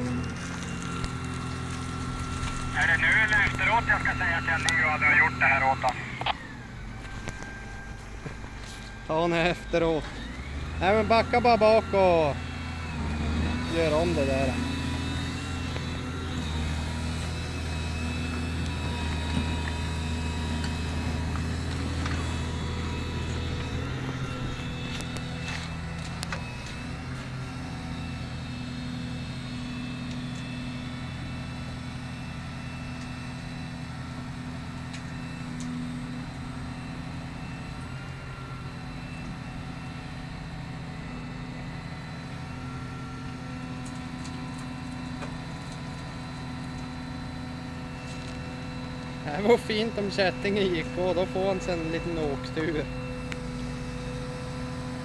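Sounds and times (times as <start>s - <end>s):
excavator engine rumbling: 0.0s - 29.8s.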